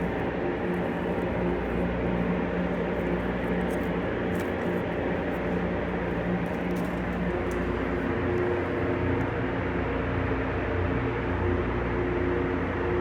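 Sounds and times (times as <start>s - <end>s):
faint ticks: 0.0s - 9.0s
electrical hum: 0.0s - 9.4s.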